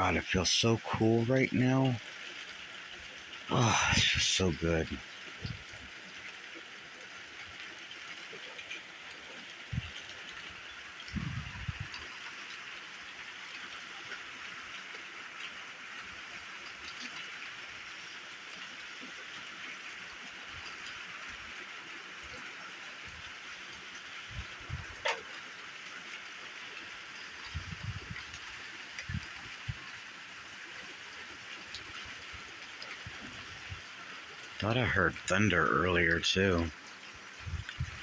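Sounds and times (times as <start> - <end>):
rain hissing: 0.0 - 2.0, 3.5 - 5.7, 11.0 - 12.2, 31.6 - 38.0.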